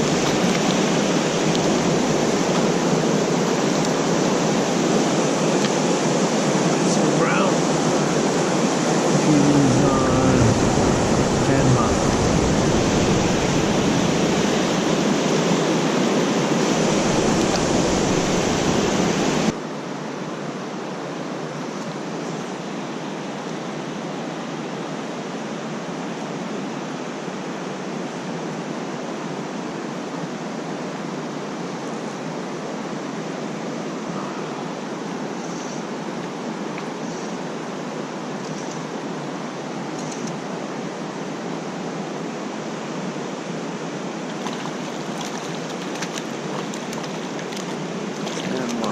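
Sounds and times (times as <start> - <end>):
creek rushing: 0.0 - 48.9.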